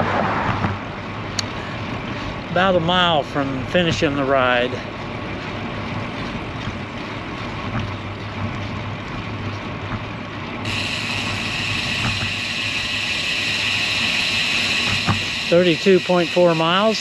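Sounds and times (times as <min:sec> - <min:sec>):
wind and road noise: 0:00.0 - 0:16.0
steady high hiss: 0:10.7 - 0:17.0.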